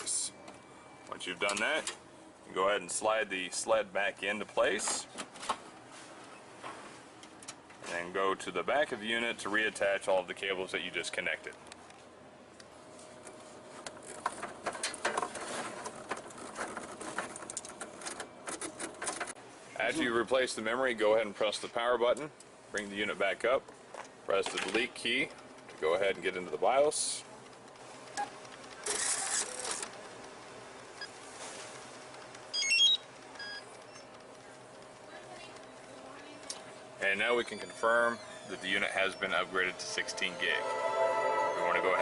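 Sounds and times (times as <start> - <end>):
register short electronic beeps: 37.2 - 42.0.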